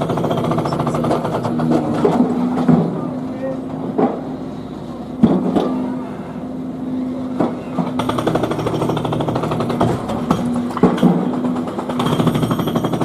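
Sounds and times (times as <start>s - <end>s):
jackhammer hammering: 0.0s - 3.0s, 7.4s - 13.0s.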